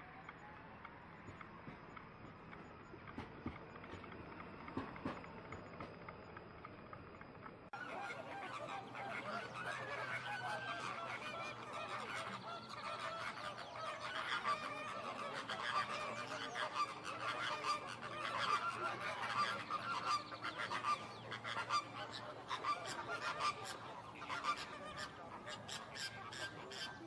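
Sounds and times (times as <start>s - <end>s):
flock of birds honking: 7.8s - 27.0s.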